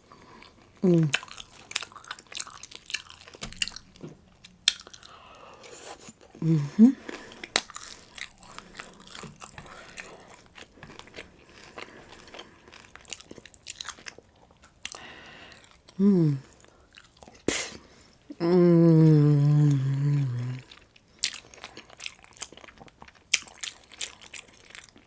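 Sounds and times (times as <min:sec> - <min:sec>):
person humming: 0:00.8 - 0:01.2, 0:06.4 - 0:07.1, 0:16.0 - 0:16.5, 0:18.3 - 0:20.7
wet mouth noises: 0:00.8 - 0:03.9, 0:04.7 - 0:10.4
person biting and chewing: 0:00.9 - 0:04.0, 0:04.6 - 0:06.5, 0:07.1 - 0:14.2.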